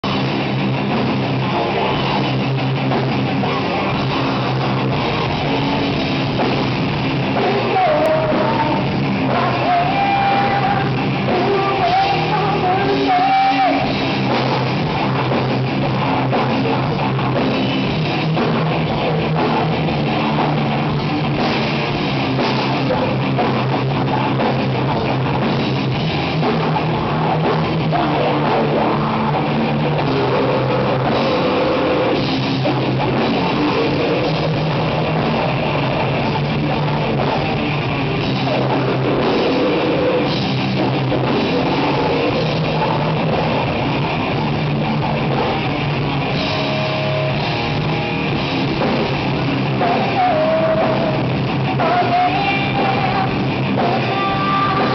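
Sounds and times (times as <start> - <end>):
distorted electric guitars: 0.0 - 54.9
drum kit: 0.0 - 54.9
person singing: 7.4 - 13.9, 27.8 - 32.2, 49.8 - 54.9.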